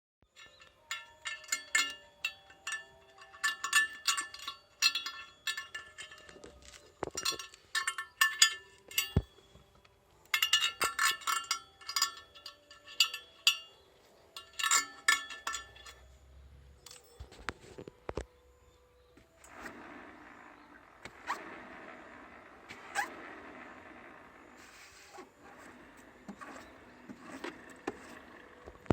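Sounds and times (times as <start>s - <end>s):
metallic clinking and rattling: 0.3s - 18.4s.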